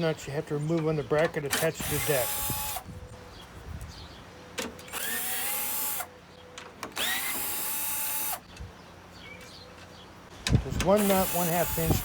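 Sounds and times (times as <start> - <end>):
power drill running: 1.8 - 2.8, 4.9 - 6.1, 7.0 - 8.5, 11.0 - 12.0.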